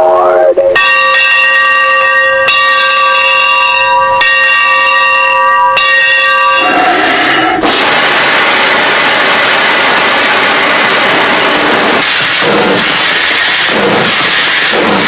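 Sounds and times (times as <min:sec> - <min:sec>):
train bell ringing: 0:00.6 - 0:07.6
loud rushing hiss: 0:06.6 - 0:15.0.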